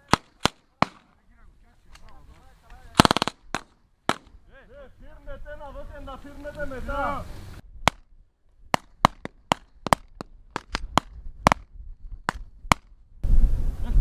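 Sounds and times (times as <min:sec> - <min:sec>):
rifle shots cracking: 0:00.0 - 0:01.2, 0:02.9 - 0:04.4, 0:08.7 - 0:11.7.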